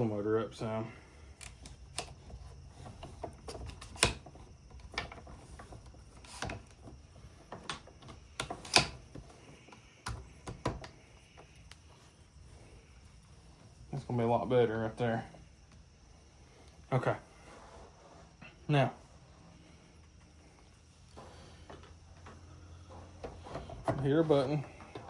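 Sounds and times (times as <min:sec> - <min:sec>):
hardware clicking and knocking: 0:01.4 - 0:09.4.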